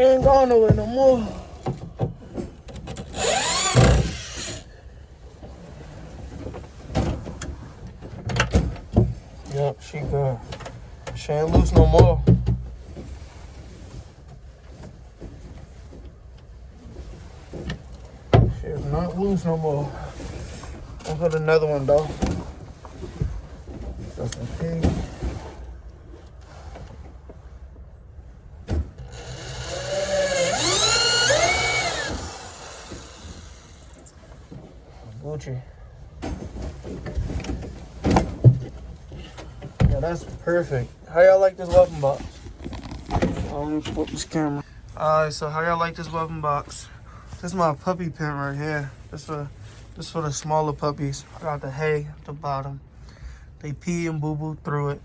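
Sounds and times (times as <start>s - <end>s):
cordless drill whining: 3.0s - 4.7s, 29.0s - 34.1s.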